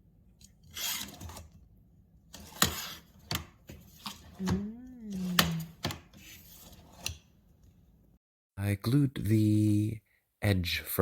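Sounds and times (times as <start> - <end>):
person humming: 4.4 - 5.8.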